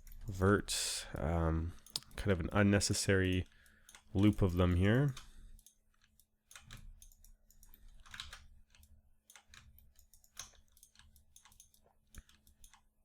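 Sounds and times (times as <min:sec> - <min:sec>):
mouse and keyboard clicking: 0:05.1 - 0:12.9.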